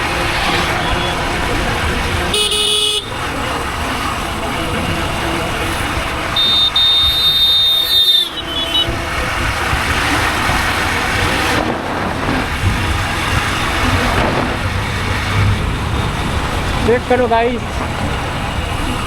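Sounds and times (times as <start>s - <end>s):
high-pitched vehicle horn: 0.0s - 9.8s
road traffic rumble: 0.0s - 19.0s.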